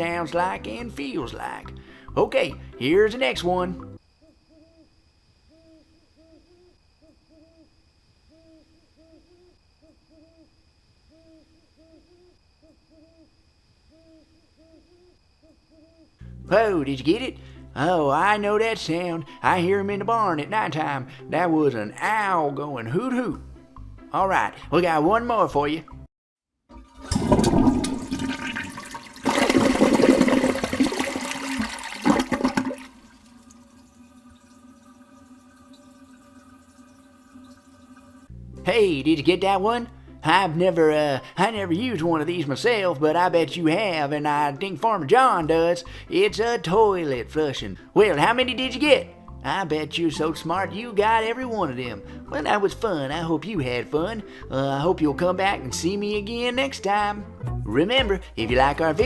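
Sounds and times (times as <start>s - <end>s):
owl hooting: 4.2s - 16.2s
toilet flushing: 26.7s - 38.3s
water running: 26.7s - 38.3s.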